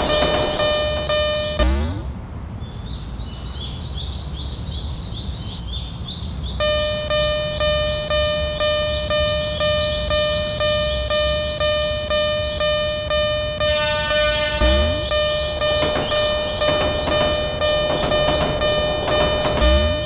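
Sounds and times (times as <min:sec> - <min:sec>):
level-crossing warning bell: 0:00.0 - 0:01.7, 0:06.6 - 0:20.0
rapid high chirping: 0:05.9 - 0:20.0.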